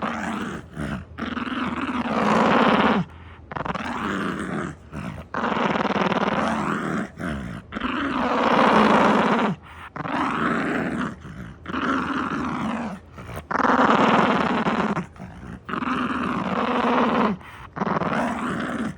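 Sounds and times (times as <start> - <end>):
dog growling: 0.0 - 18.9.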